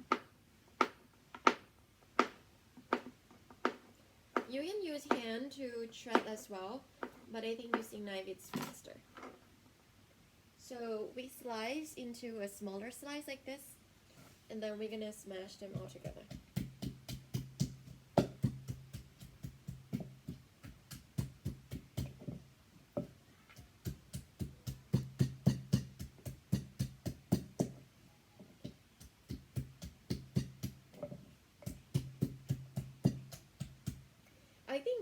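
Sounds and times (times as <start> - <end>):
knife chopping on chopping board: 15.8 - 22.4, 28.6 - 34.0.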